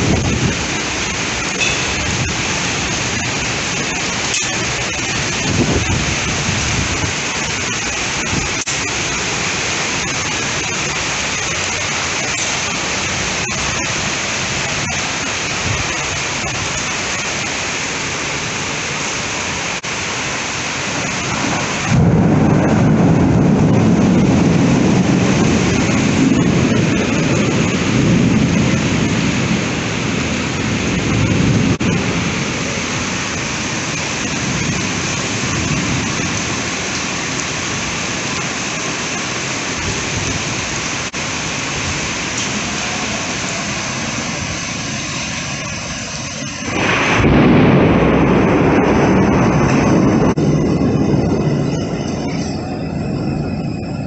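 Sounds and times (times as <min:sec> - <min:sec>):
heavy rain pouring: 0:00.0 - 0:54.0
deep rumble: 0:46.7 - 0:54.0.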